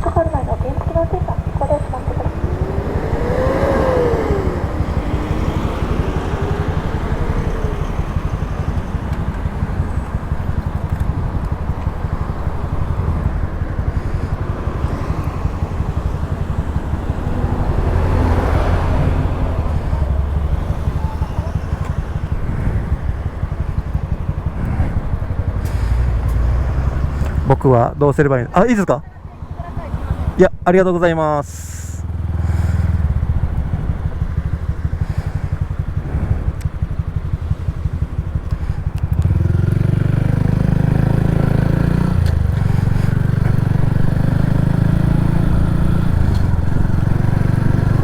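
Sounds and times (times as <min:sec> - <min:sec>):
police car siren wailing: 0:00.0 - 0:24.4
low road and engine rumble: 0:00.0 - 0:48.0.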